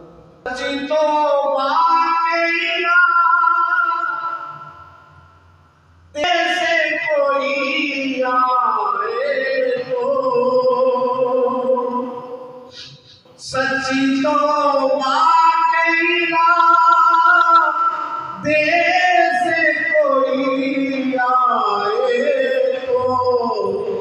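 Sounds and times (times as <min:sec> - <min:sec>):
person singing long ornamented notes: 0:06.2 - 0:24.0.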